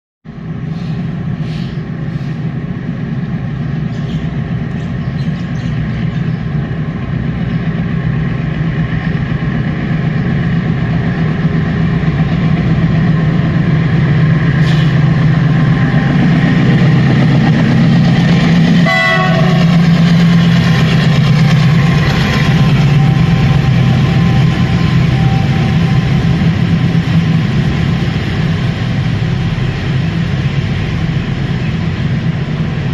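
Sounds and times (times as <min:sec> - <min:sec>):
locomotive engine drone: 0:00.3 - 0:32.9
train horn blast: 0:18.7 - 0:19.9.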